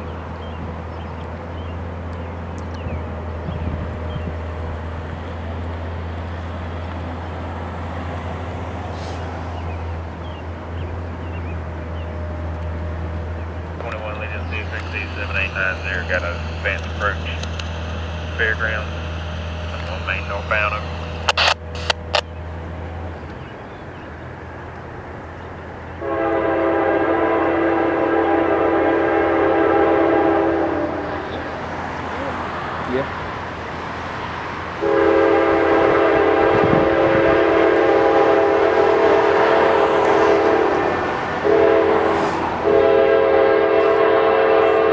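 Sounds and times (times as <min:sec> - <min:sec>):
low engine drone with tones: 0:00.0 - 0:26.8
locomotive air horn blast: 0:08.8 - 0:09.7, 0:26.0 - 0:31.8, 0:34.8 - 0:44.9
brief hiss: 0:08.9 - 0:09.4.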